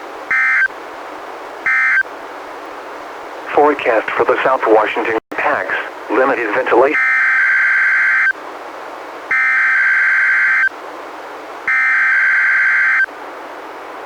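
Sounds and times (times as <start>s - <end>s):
radio hiss: 3.4s - 7.0s
data tone bursts: 11.7s - 13.1s.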